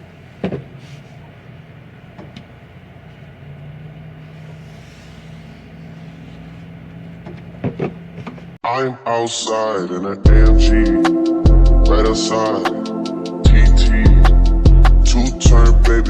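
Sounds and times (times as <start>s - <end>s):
truck engine and road noise: 0.0s - 8.6s.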